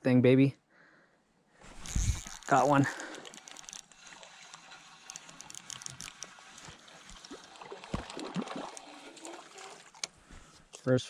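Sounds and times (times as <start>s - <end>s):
small ticks: 1.8s - 10.2s
water splashing and dripping: 2.2s - 10.2s.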